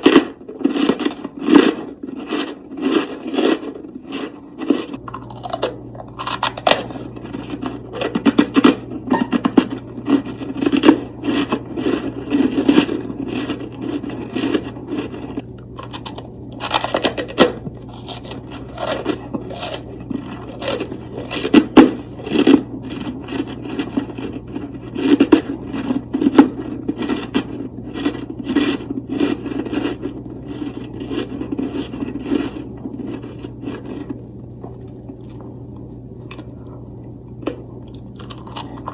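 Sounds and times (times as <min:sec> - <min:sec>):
steady low hum: 0:00.0 - 0:38.9
frost being scraped: 0:16.6 - 0:22.2.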